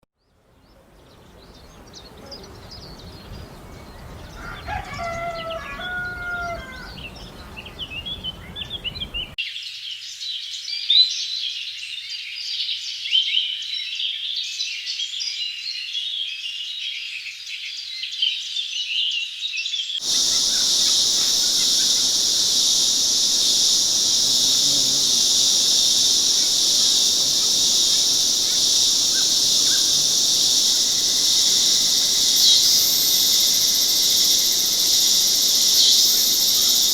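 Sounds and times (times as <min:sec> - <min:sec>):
woodland birds chirping: 0:00.2 - 0:09.4, 0:20.0 - 0:36.9
birdsong: 0:00.2 - 0:15.0, 0:20.0 - 0:36.9
rooster crowing: 0:04.2 - 0:09.2, 0:20.0 - 0:36.9
shrill insect drone: 0:20.0 - 0:36.9.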